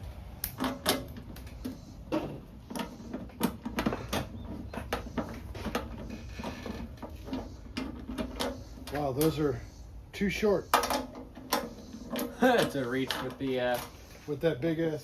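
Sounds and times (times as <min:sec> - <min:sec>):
metal bolts and tools clicking: 0:10.6 - 0:14.0.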